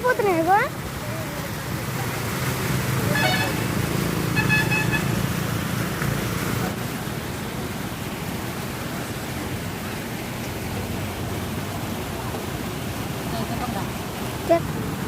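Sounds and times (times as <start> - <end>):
road traffic noise: 0.0 - 15.0
vehicle horn honking: 3.1 - 5.3.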